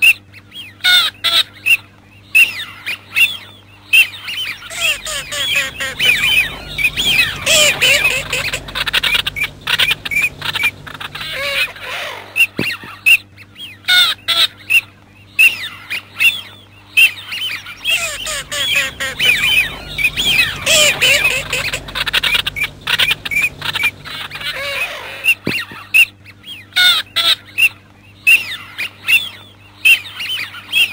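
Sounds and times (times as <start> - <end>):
flock of ducks whistling and squawking: 4.0 - 12.7, 15.4 - 25.6.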